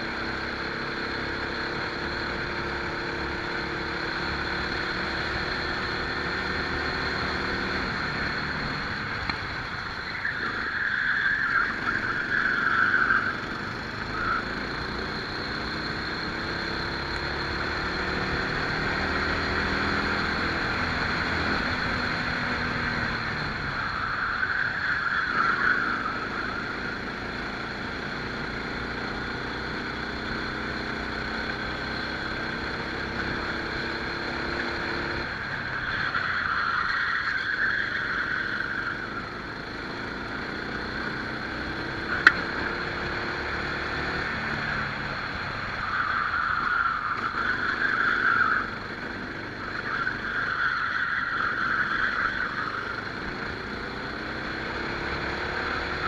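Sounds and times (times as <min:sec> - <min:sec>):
kart engine accelerating: 0:00.0 - 0:56.0.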